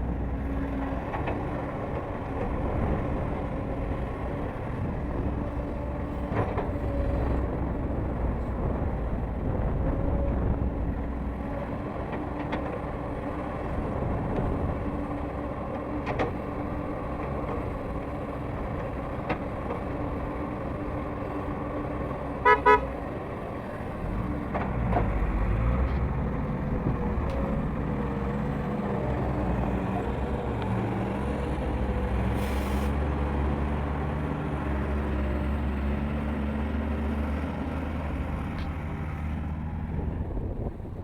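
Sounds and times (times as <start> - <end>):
excavator diesel engine running: 0.0 - 41.0
short horn toots: 22.4 - 22.8.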